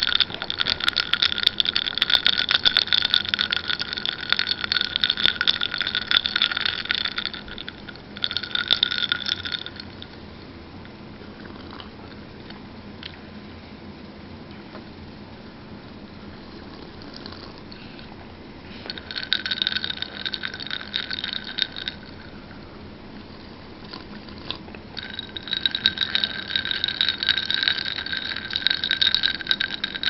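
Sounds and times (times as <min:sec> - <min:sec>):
ice crackling in water: 0:00.0 - 0:10.0, 0:25.0 - 0:30.0.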